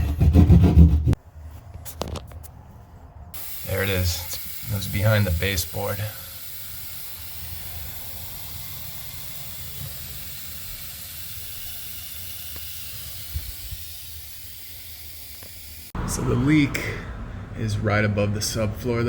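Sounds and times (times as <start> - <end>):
water spraying hiss: 3.4 - 16.0.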